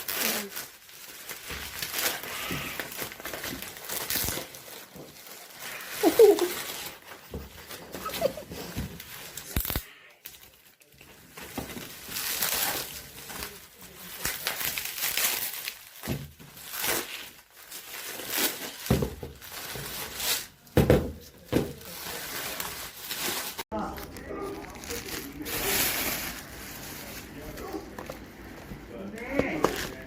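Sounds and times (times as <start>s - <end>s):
packaging tearing: 0.0s - 8.4s, 9.0s - 10.7s, 11.9s - 20.7s
plastic packaging crinkling: 0.0s - 20.7s, 21.4s - 30.0s.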